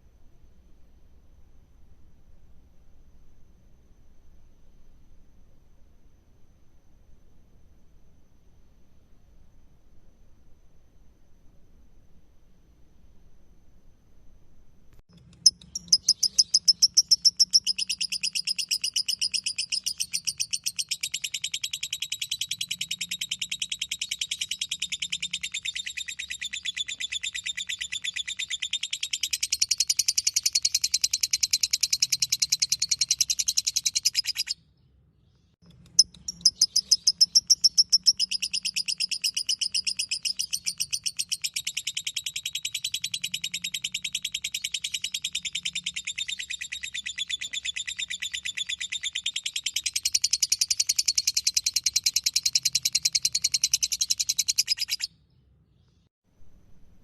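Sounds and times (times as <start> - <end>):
bird chattering trill: 15.2 - 34.6, 35.9 - 55.1.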